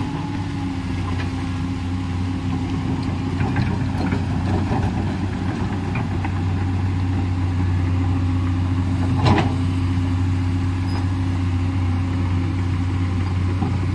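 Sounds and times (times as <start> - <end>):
excavator diesel engine running: 0.0 - 13.9.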